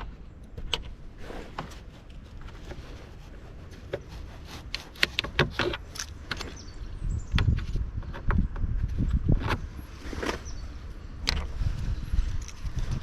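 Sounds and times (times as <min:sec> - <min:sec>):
plastic fasteners clicking: 0:03.8 - 0:06.7.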